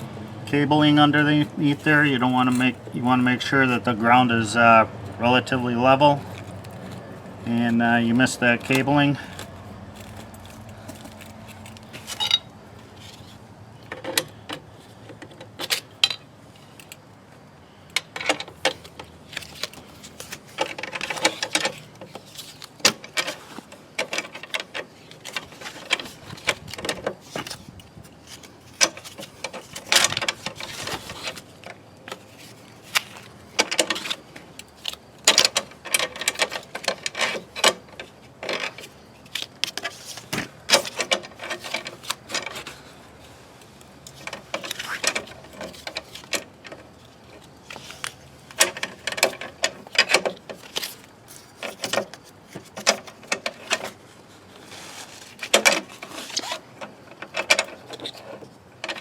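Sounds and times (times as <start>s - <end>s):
car jack clicking and clanking: 8.2s - 12.6s, 17.9s - 19.6s, 20.3s - 27.4s, 35.2s - 42.8s, 48.5s - 51.0s.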